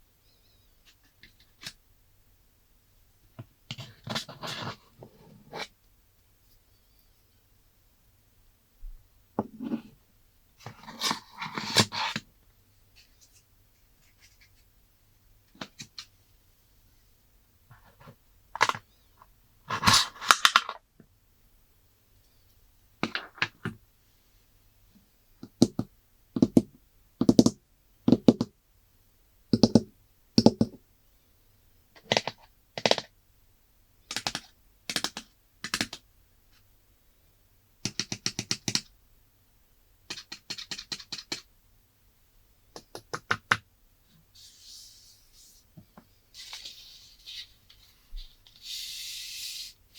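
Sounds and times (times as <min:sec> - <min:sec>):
hands tapping packaging: 0:34.1 - 0:36.0.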